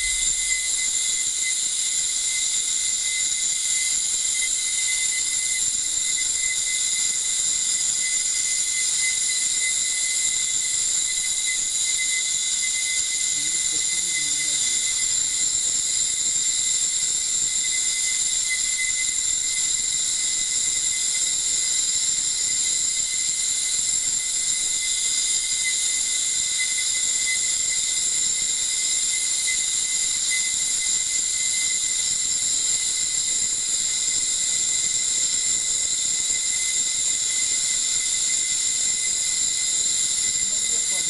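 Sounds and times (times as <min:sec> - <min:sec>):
steady whining tones: 0:00.0 - 0:01.6
high-pitched machine hiss: 0:00.0 - 0:41.0.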